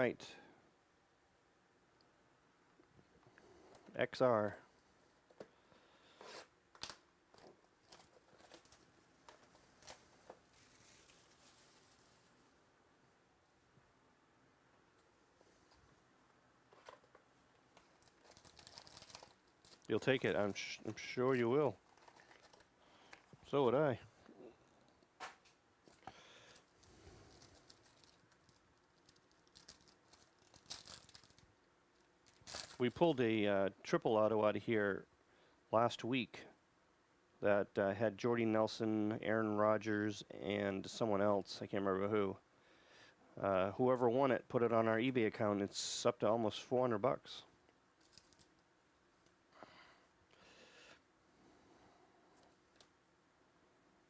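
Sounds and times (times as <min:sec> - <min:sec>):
wrapper crinkling and tearing: 0:06.2 - 0:12.3, 0:17.7 - 0:23.3, 0:25.9 - 0:33.0, 0:48.0 - 0:48.6
packaging rustling: 0:06.2 - 0:12.4, 0:16.7 - 0:23.5, 0:24.8 - 0:32.9, 0:48.0 - 0:48.6.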